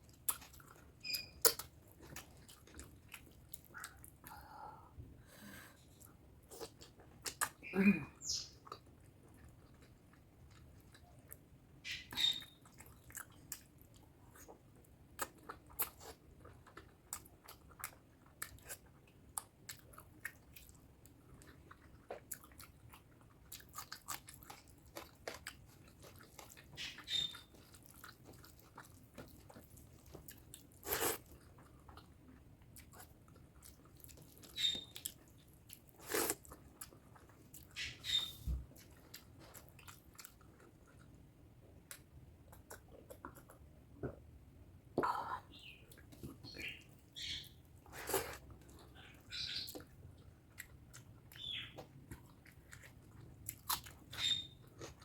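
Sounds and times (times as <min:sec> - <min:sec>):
person chewing and biting food: 0:12.2 - 0:41.2.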